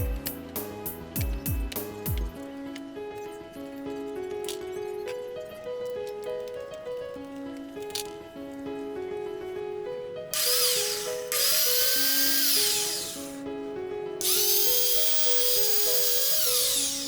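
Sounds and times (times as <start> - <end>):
background music: 0.0 - 17.0
angle grinder whining: 10.3 - 13.4, 14.2 - 17.0.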